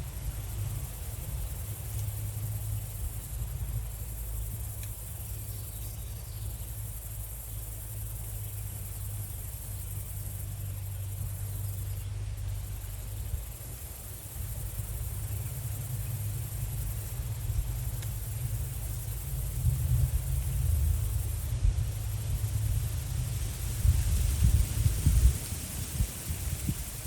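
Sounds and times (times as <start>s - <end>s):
insects trilling: 0.0s - 27.0s
low steady rumble: 0.0s - 27.0s.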